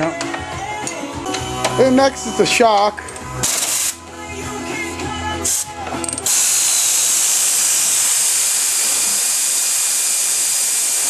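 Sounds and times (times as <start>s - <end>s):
air tool hissing: 3.4s - 4.0s, 5.5s - 11.0s
air tool sputter: 3.4s - 4.0s, 5.5s - 11.0s.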